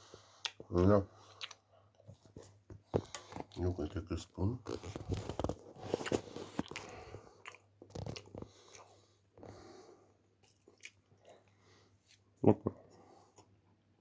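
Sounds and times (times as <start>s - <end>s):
person chewing: 0.1s - 3.7s, 4.7s - 9.6s, 10.4s - 13.6s
wet mouth sounds: 4.7s - 8.9s.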